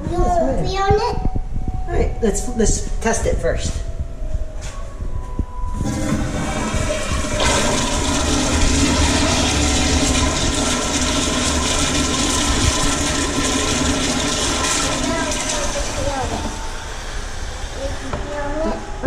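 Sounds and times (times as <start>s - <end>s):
toilet flushing: 5.8s - 17.9s.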